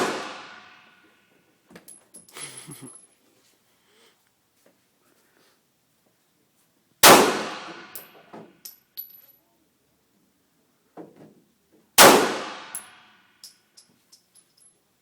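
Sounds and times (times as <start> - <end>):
gunshots with echoing decay: 0.0 - 0.8, 7.0 - 8.0, 12.0 - 12.9.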